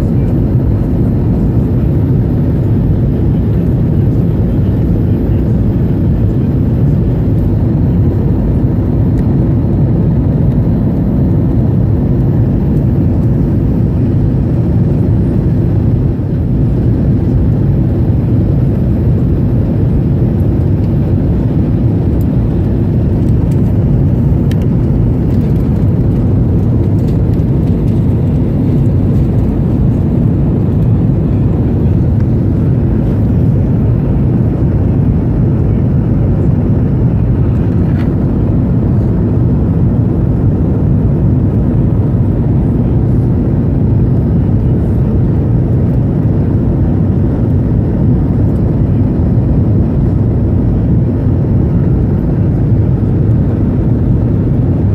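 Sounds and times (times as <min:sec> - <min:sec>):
airliner rumble in flight: 0:00.0 - 0:54.9.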